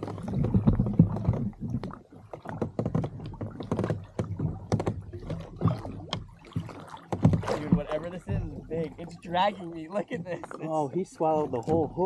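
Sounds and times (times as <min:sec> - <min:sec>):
gear knocking on kayak hull: 0:00.0 - 0:09.1.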